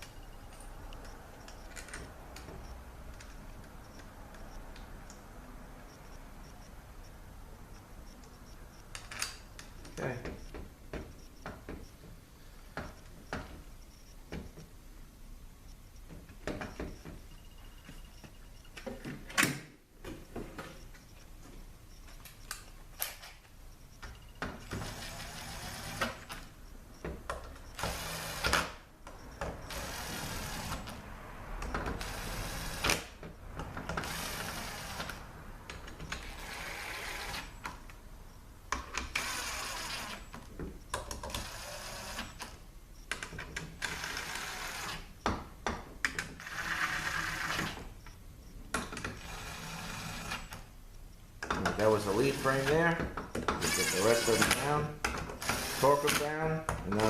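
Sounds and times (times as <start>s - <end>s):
knocks of tool and parts: 45.2s - 46.4s, 51.4s - 51.8s.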